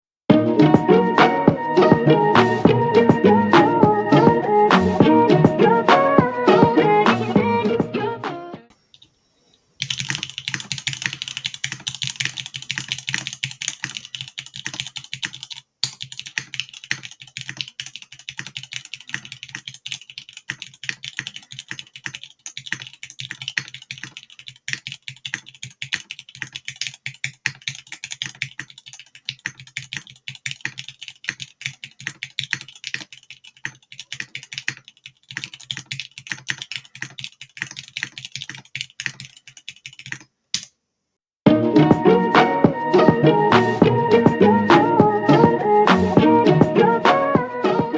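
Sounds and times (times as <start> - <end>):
mechanical keyboard typing: 9.8 - 40.7.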